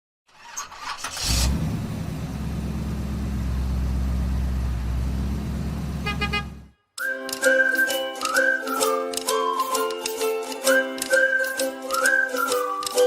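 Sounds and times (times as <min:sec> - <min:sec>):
engine starting and running: 0:00.3 - 0:06.7.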